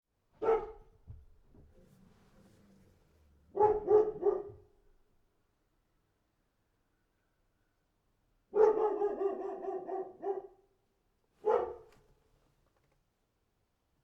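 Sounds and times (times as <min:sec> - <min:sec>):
dog barking: 0:00.4 - 0:01.0, 0:03.5 - 0:04.8, 0:08.5 - 0:10.7, 0:11.4 - 0:12.0.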